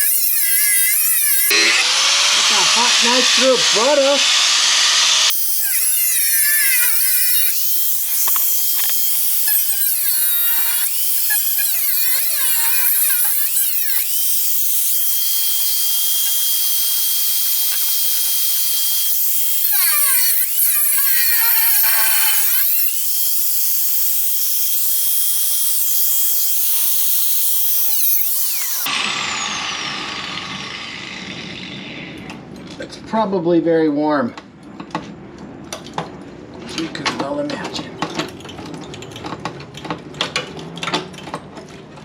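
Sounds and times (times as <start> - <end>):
power tool cutting metal: 0.0 - 32.3.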